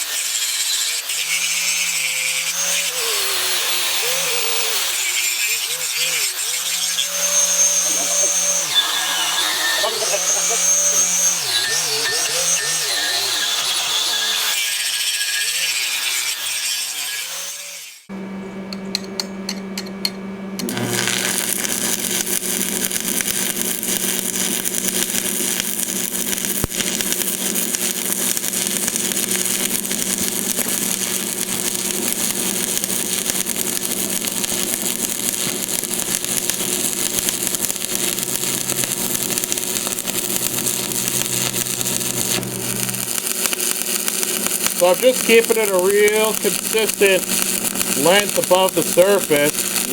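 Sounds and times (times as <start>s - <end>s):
welding arc crackling hiss: 0.0s - 18.0s, 20.6s - 49.9s
angle grinder grinding steel: 0.0s - 18.1s, 20.6s - 49.9s
electric hum with clicks: 18.2s - 49.9s.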